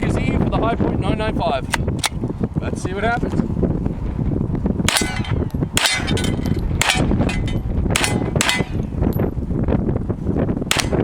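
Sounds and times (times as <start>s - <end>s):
gunshots: 4.9s - 8.8s, 10.7s - 11.0s.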